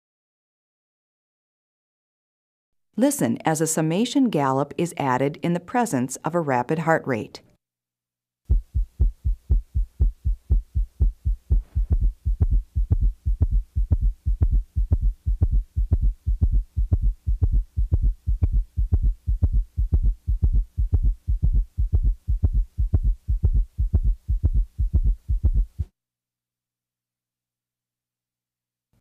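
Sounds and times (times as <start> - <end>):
galloping heartbeat thuds: 8.5 - 25.9.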